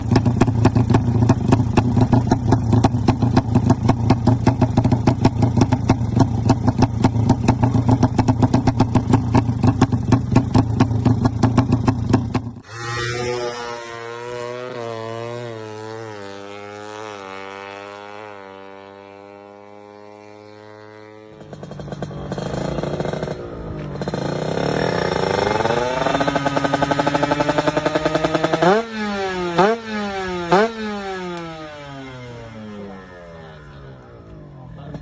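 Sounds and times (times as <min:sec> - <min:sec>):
loud motorcycle engine: 0:00.0 - 0:35.0.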